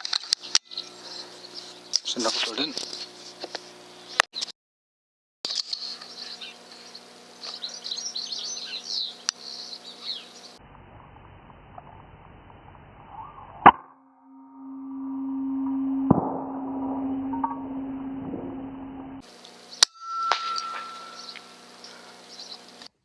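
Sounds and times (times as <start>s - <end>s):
small birds chirping: 0.3s - 3.3s, 5.5s - 10.6s, 20.8s - 22.9s
steady low hum: 0.3s - 4.2s, 5.6s - 22.9s.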